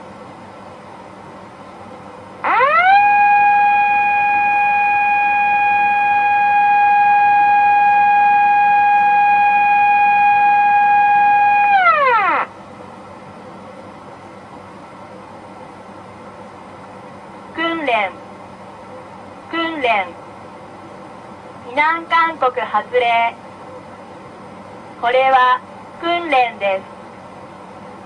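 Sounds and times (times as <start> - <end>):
outdoor siren blast: 2.4 - 12.5.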